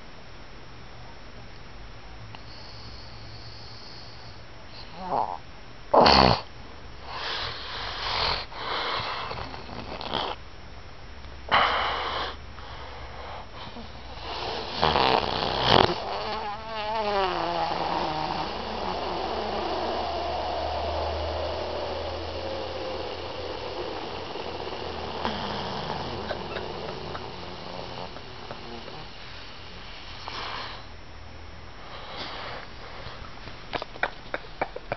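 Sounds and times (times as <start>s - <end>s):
man snoring: 14.1s - 30.9s
short breathy rush: 17.6s - 30.9s, 31.8s - 33.4s.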